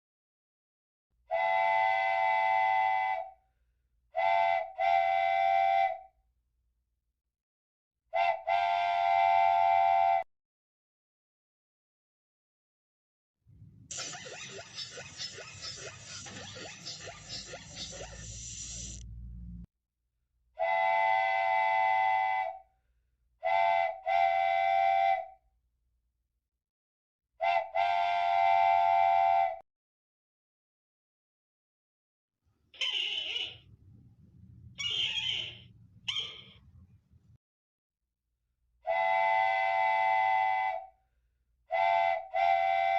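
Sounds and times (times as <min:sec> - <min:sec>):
whistle blasts: 0:13.9 - 0:19.0.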